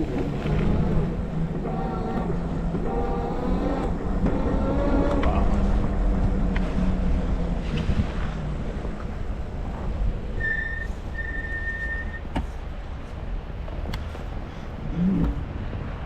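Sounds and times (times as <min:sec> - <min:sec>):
wind buffeting microphone: 0:00.0 - 0:16.0
high whistle-like tones: 0:10.4 - 0:12.3.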